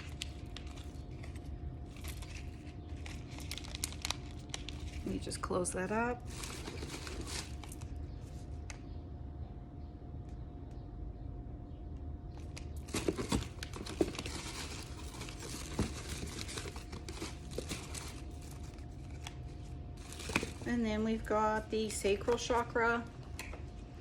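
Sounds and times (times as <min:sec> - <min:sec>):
packaging crinkling: 0:00.0 - 0:08.0, 0:12.4 - 0:20.8
faint steady hum: 0:00.0 - 0:24.0.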